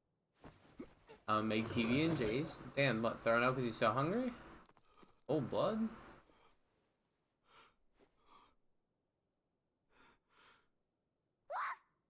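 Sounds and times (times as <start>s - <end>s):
soft breathing: 5.9s - 8.7s.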